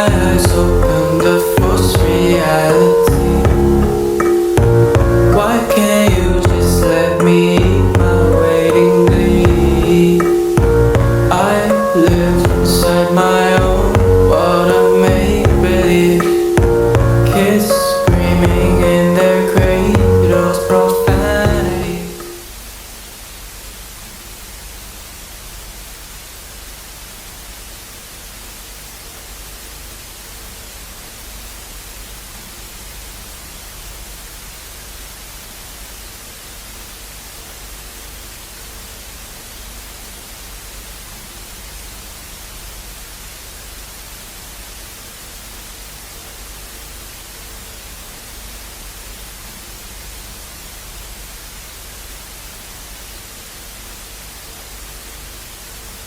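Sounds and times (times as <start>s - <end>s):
low rumble: 0.0s - 13.0s, 13.6s - 19.0s
static hiss: 0.0s - 56.0s.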